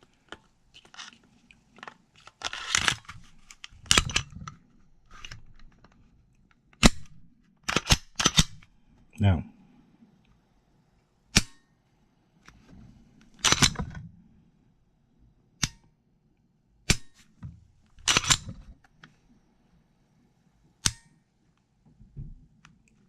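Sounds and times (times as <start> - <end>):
pistol parts clicking and snapping: 2.2 - 4.6, 6.8 - 8.7, 13.4 - 13.9, 15.6 - 15.9, 16.9 - 17.2, 18.0 - 18.7.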